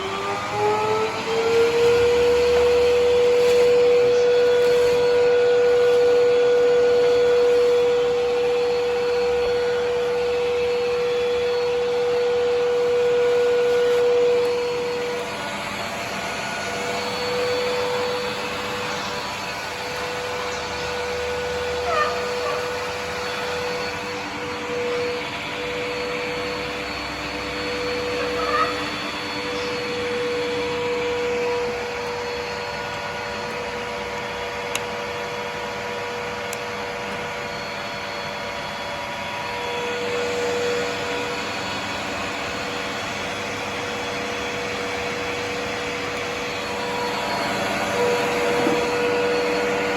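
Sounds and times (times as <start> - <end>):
vacuum cleaner motor whine: 0.0 - 49.9.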